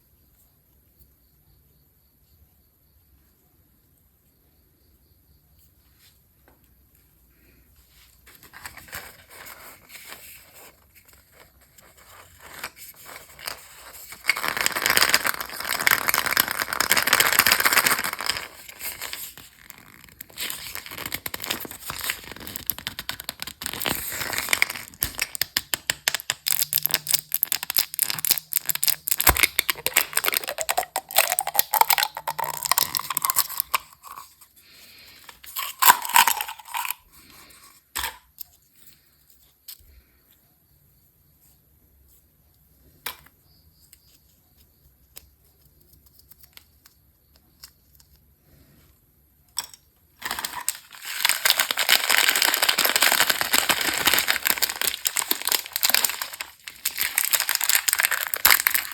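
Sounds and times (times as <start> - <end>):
candy wrappers tearing and crinkling: 11.4 - 34.3, 35.4 - 37.0, 50.2 - 58.9.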